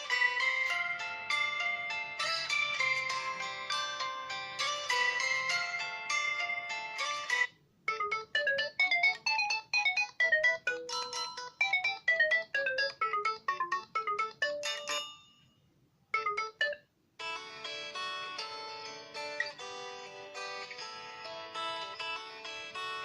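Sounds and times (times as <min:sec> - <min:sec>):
phone ringtone melodies: 0:00.0 - 0:23.0.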